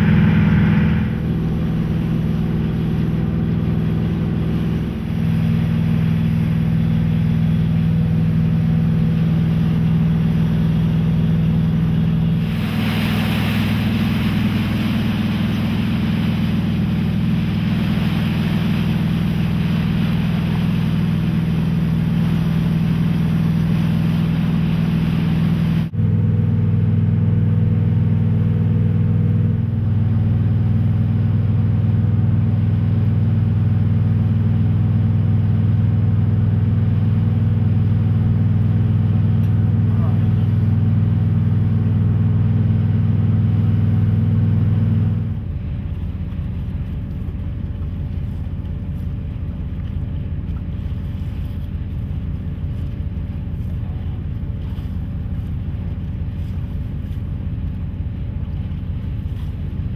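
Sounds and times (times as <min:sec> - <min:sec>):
tugboat engine running: 0:00.0 - 0:59.9
hiss: 0:12.4 - 0:21.6.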